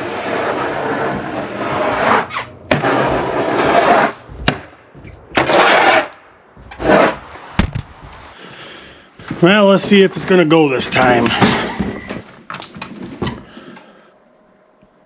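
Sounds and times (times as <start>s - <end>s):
snow shovel scraping snow: 0.0s - 4.5s, 5.1s - 7.6s
sharp knocks: 2.7s - 8.2s.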